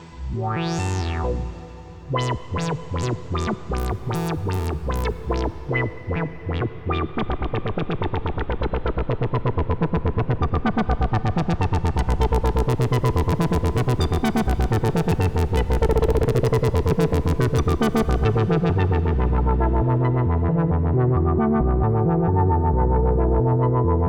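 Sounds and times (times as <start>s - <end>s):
heavy synth bass: 0.0s - 5.7s.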